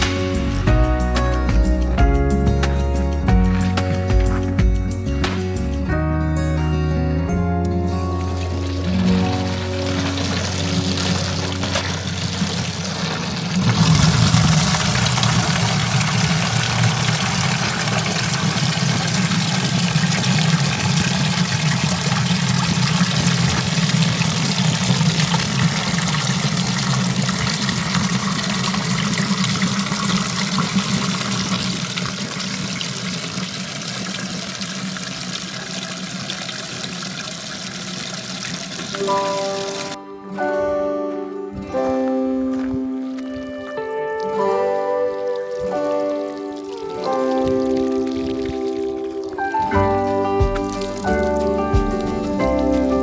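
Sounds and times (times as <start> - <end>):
water running in a strong stream: 8.2 - 40.0, 42.5 - 53.0.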